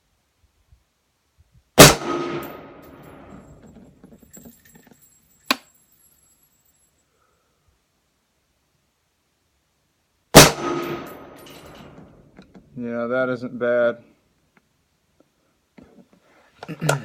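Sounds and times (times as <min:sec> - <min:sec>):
rifle shot with echo: 0:01.8 - 0:03.4, 0:10.3 - 0:11.4.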